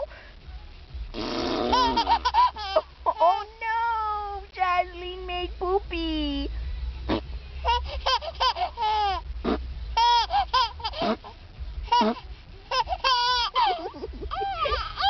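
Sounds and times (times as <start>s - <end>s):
high-pitched laughing and squealing: 1.6s - 3.5s, 11.9s - 15.0s.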